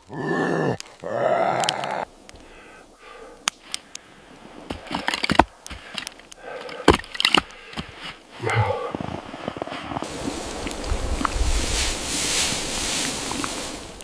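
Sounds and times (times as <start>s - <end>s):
sharp cracks and knocks: 4.7s - 7.9s.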